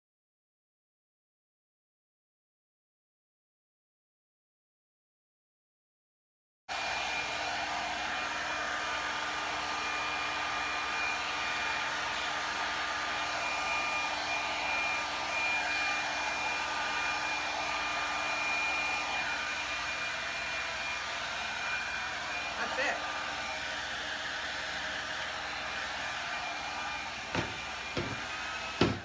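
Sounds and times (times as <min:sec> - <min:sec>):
hot-air blower running: 0:06.7 - 0:29.0.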